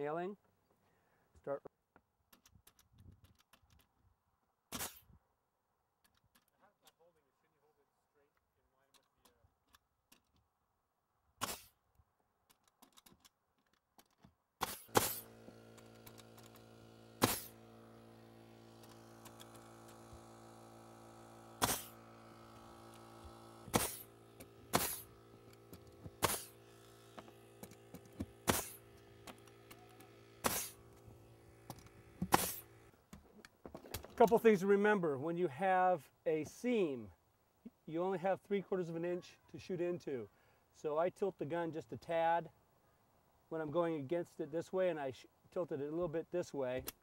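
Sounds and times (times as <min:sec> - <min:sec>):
nail gun shots: 0:04.7 - 0:05.1, 0:11.4 - 0:11.8, 0:14.6 - 0:17.7, 0:21.5 - 0:30.9, 0:31.8 - 0:32.7
steady machine hum: 0:14.9 - 0:32.9.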